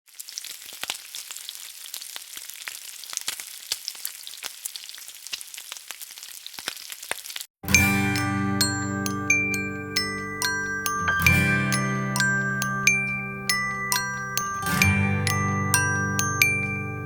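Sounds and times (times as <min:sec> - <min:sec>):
food sizzling in hot oil: 0:00.1 - 0:07.5
music with mallet notes: 0:07.7 - 0:17.0.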